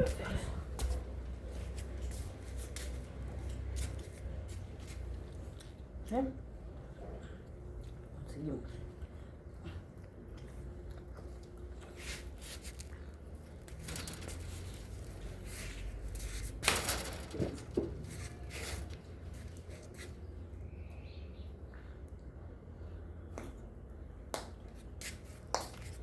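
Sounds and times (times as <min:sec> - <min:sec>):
rustling and handling noises: 0:11.8 - 0:20.3.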